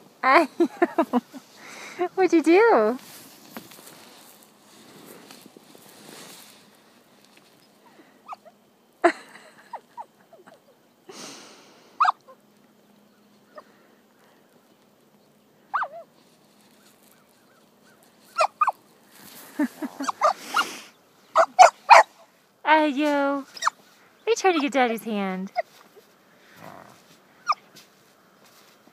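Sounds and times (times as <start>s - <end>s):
rustling: 2.8s - 8.3s, 16.0s - 24.7s
puppy whimpering yips: 15.7s - 16.0s, 18.4s - 18.8s, 23.5s - 23.8s, 27.4s - 27.6s.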